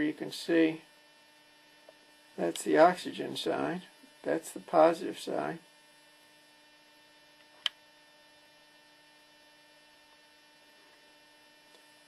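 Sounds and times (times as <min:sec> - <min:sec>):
faint electrical hum: 0:00.0 - 0:12.0
sharp click: 0:07.6 - 0:07.8.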